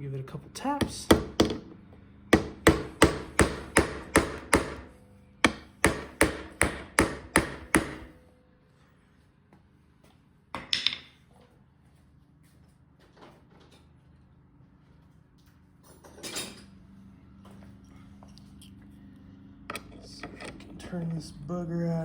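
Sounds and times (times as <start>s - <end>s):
hammer tapping metal: 2.4s - 8.2s.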